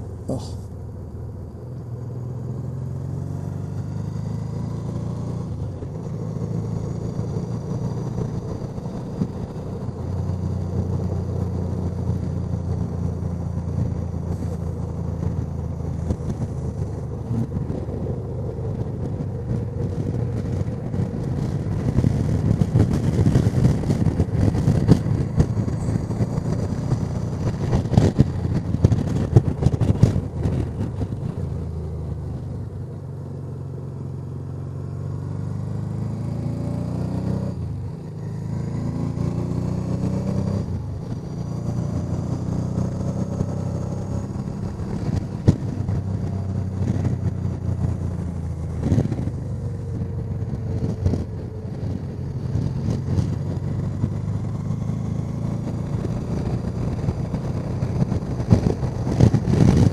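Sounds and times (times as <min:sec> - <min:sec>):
motorcycle engine running: 0:00.0 - 0:59.9
wind noise on microphone: 0:11.8 - 0:32.8, 0:36.2 - 0:59.9.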